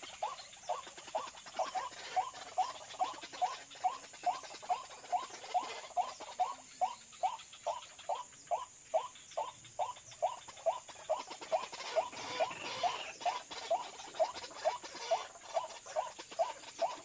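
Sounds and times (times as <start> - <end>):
waterhen calling: 9.4 - 17.0.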